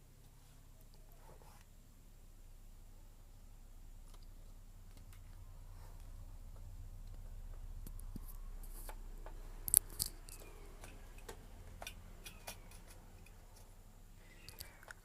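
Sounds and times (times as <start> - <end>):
low steady hum: 0.0 - 15.0
plastic parts clicking and knocking: 6.6 - 13.7.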